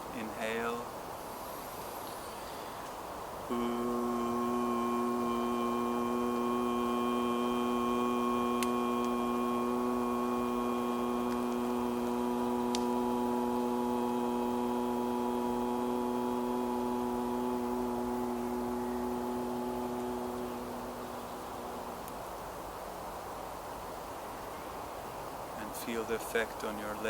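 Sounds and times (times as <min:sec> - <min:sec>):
man holding long ooh tone: 0:03.5 - 0:22.0.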